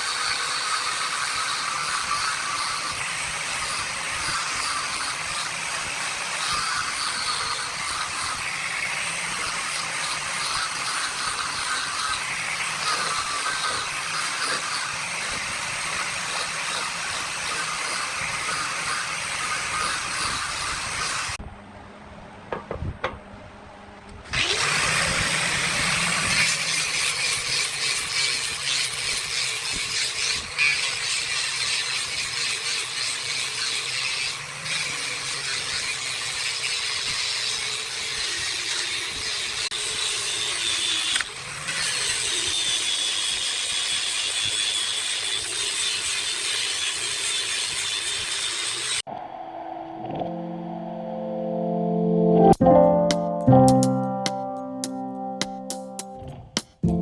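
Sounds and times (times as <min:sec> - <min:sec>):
wood lathe turning: 0:00.0 - 0:21.4, 0:24.3 - 0:49.1.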